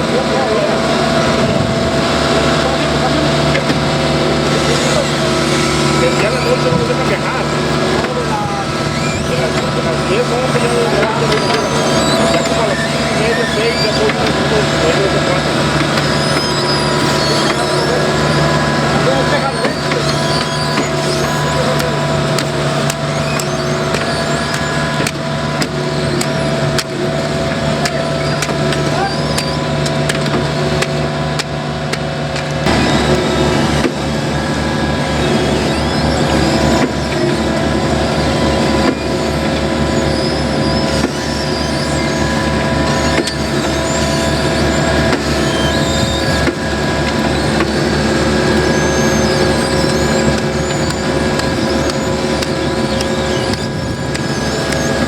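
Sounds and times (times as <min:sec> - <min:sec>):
diesel engine running: 0:00.0 - 0:55.0.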